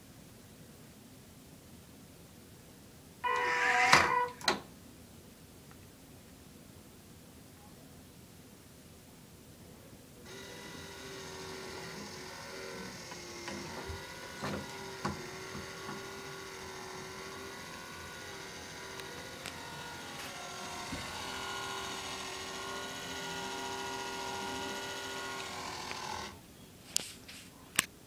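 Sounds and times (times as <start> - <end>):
sharp clicks and knocks: 10.3 - 23.8
small electric motor whirring: 10.3 - 26.4.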